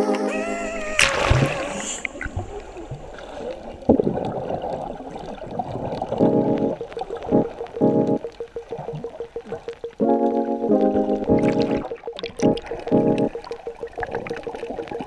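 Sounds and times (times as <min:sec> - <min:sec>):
music: 0:00.0 - 0:00.5, 0:06.2 - 0:14.1
water splashes: 0:00.4 - 0:10.2, 0:11.3 - 0:15.0
water sloshing and gurgling: 0:00.7 - 0:10.4, 0:11.3 - 0:15.0.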